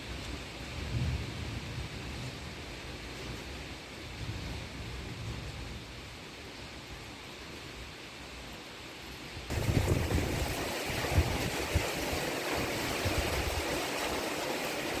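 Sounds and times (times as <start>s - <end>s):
heavy rain falling: 0.0s - 15.0s
wind gusting against microphone: 9.5s - 15.0s.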